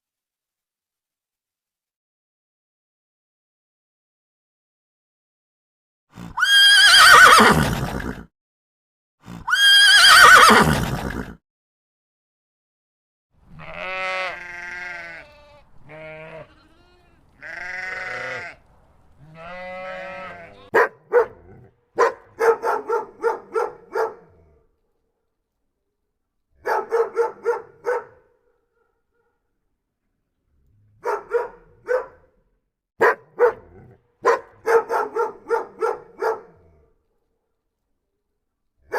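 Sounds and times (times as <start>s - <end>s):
sheep bleating: 13.5s - 18.6s, 19.2s - 20.8s
dog yapping barks: 20.3s - 24.3s, 26.6s - 29.3s, 31.0s - 32.4s, 33.0s - 36.6s.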